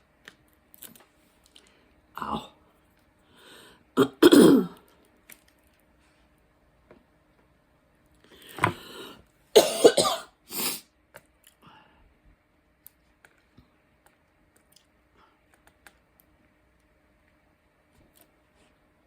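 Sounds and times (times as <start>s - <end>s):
person coughing: 4.0s - 4.8s, 9.6s - 10.8s
faint small clicks: 12.8s - 17.4s.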